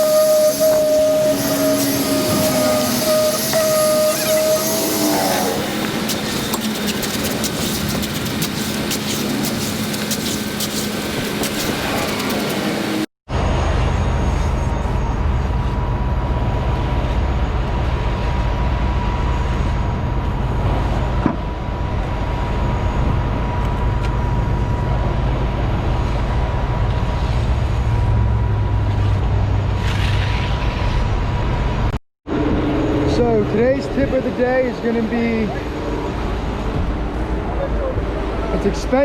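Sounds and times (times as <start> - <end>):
diesel engine rumbling: 0.0 - 39.0
faint engine whine: 0.8 - 39.0.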